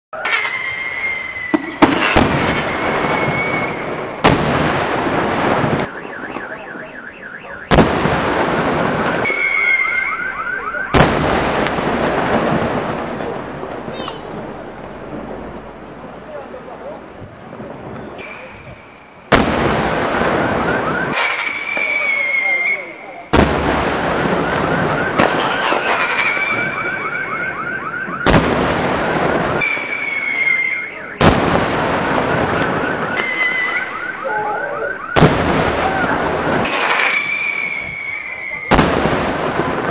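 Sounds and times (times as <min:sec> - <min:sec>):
firework whistle sliding down: 0:00.2 - 0:03.9, 0:09.2 - 0:11.0, 0:20.4 - 0:23.0, 0:29.6 - 0:31.2, 0:32.5 - 0:38.7
firework bang: 0:00.2 - 0:06.9, 0:07.7 - 0:15.7, 0:18.1 - 0:27.4, 0:28.1 - 0:34.0, 0:35.1 - 0:39.9
firework crackling: 0:00.2 - 0:39.9
shrill chirping whistle: 0:00.4 - 0:01.7, 0:09.2 - 0:10.3.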